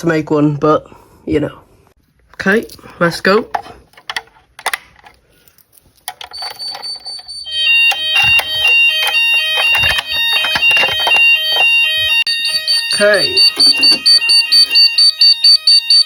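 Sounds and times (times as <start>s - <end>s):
clicks: 6.1s - 12.7s
steady high-pitched alarm tone: 6.4s - 16.0s
two-pitch alternating alarm sounder: 6.4s - 16.0s.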